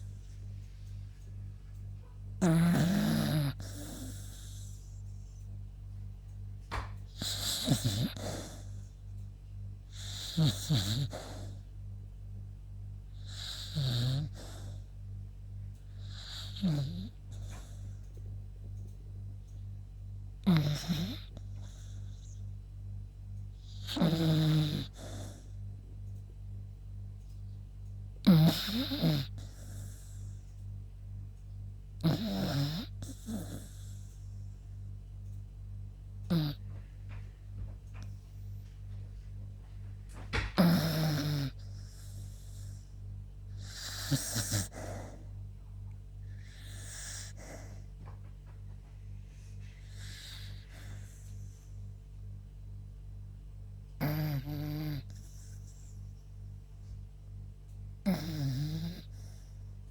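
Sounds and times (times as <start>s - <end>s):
steady low hum: 0.0s - 59.9s
dog snoring: 2.0s - 5.5s, 6.7s - 9.2s, 9.8s - 19.7s, 20.4s - 22.8s, 23.5s - 26.1s, 28.2s - 30.6s, 31.9s - 35.4s, 36.1s - 51.9s, 54.0s - 57.0s, 58.0s - 59.9s.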